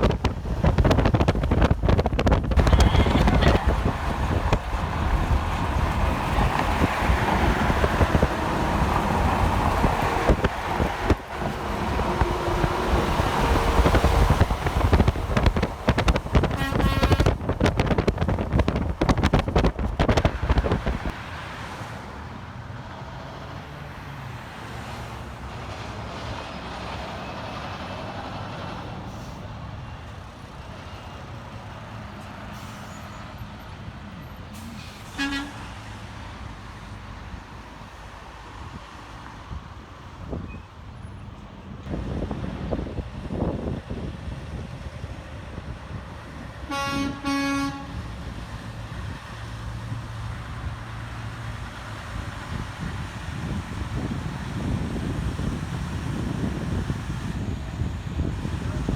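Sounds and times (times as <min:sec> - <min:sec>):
heavy truck rumbling past: 0:00.0 - 0:58.9
highway traffic noise: 0:00.0 - 0:58.9
truck horn: 0:02.6 - 0:03.9, 0:16.3 - 0:17.5, 0:34.6 - 0:35.9, 0:46.6 - 0:48.3
brief horn toot: 0:16.5 - 0:17.4, 0:34.7 - 0:35.7, 0:46.7 - 0:48.1.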